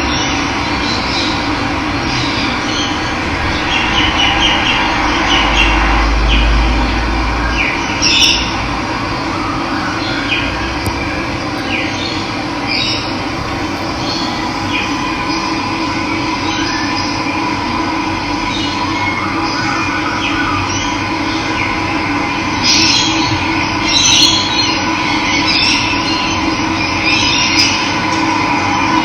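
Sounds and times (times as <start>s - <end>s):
deep low rumble: 0.5s - 18.5s
birds calling: 11.6s - 17.0s.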